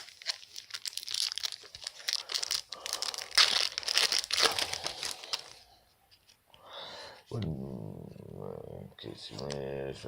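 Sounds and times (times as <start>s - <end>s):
wrapper crinkling and tearing: 0.0s - 5.6s.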